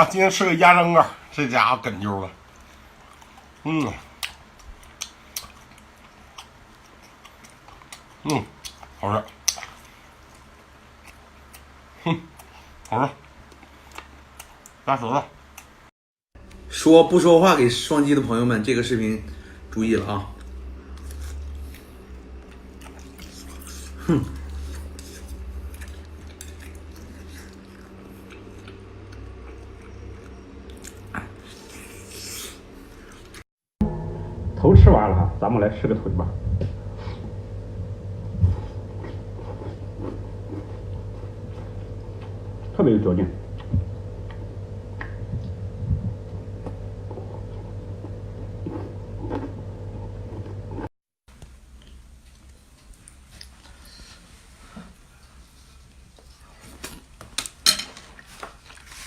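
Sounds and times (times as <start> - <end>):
steady low hum: 0.0 - 57.6
person chewing meat: 2.4 - 14.8, 20.0 - 33.4, 38.2 - 42.7, 43.5 - 49.6.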